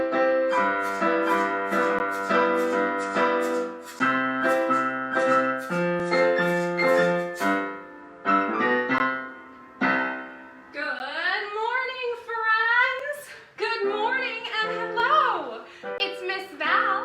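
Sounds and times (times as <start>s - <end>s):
piano chords: 0.0s - 11.0s.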